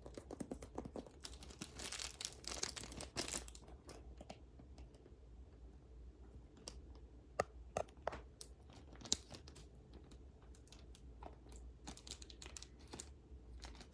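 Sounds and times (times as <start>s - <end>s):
slime crinkling and crunching: 0.2s - 3.7s, 10.6s - 13.9s.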